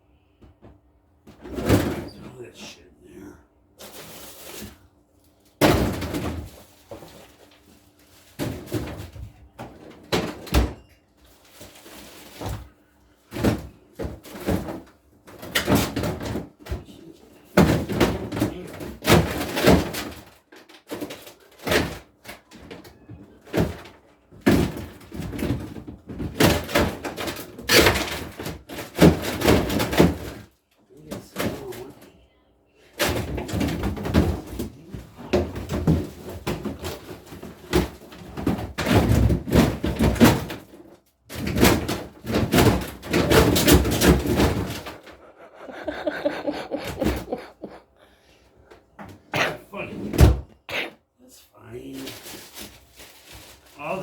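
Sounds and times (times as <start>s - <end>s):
freezer drawer and door handled: 33.0s - 45.2s.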